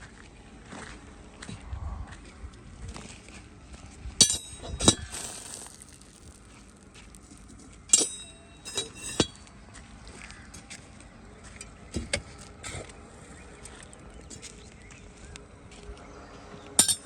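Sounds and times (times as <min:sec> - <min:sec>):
hard objects clinking and knocking: 0:04.9 - 0:06.9.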